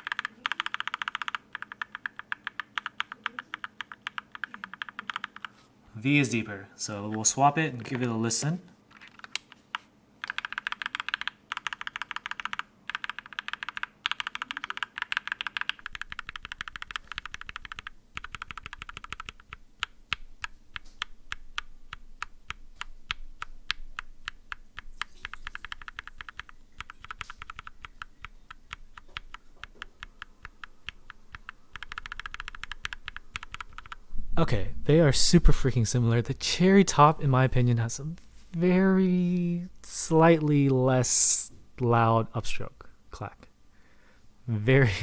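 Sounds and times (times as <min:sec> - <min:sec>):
mechanical keyboard typing: 0:00.0 - 0:05.6, 0:09.0 - 0:34.0.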